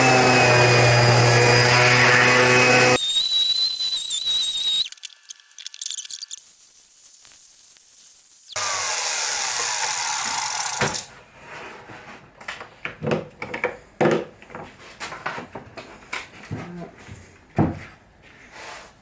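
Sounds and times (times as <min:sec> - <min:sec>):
handheld power tool running: 0:03.0 - 0:08.6.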